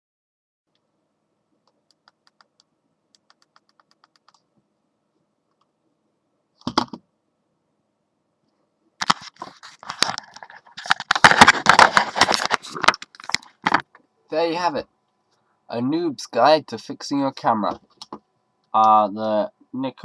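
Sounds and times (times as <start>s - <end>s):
camera parts clicking and clattering: 9.0s - 13.8s.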